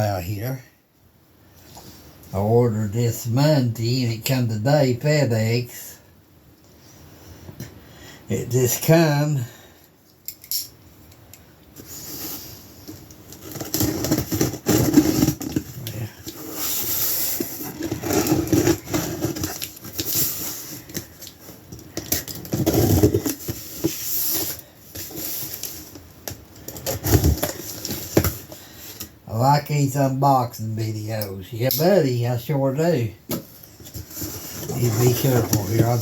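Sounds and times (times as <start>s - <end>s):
cardboard and tape tearing: 13.3s - 21.1s, 22.1s - 25.9s, 26.8s - 28.4s, 33.8s - 36.0s
knife cutting cardboard box: 13.5s - 15.7s, 16.3s - 20.6s, 33.9s - 36.0s.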